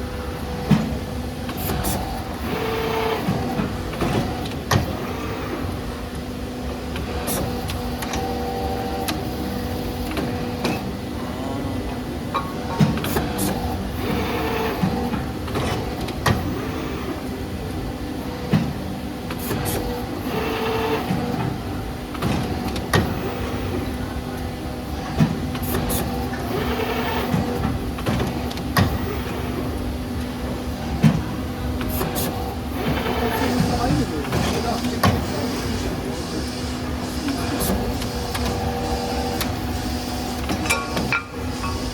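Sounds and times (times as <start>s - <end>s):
machine motor hum: 0.0s - 41.9s
machine clicks and knocks: 3.2s - 5.0s, 12.3s - 16.6s, 18.4s - 41.9s.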